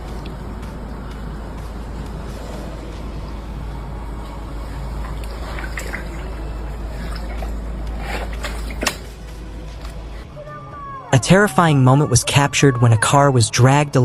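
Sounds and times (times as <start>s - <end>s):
floodwater rushing: 4.3s - 8.8s.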